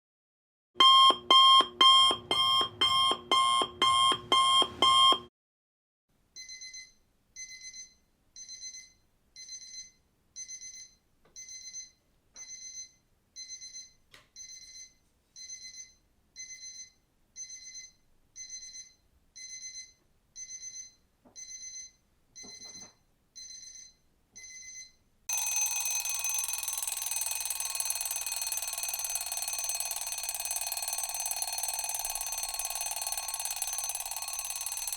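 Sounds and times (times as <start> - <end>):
digital alarm clock beeps: 0.8 - 5.3, 6.4 - 34.9
pulsing electronic alarm: 0.8 - 5.3, 25.3 - 34.9
continuous loud ringing: 25.3 - 34.9.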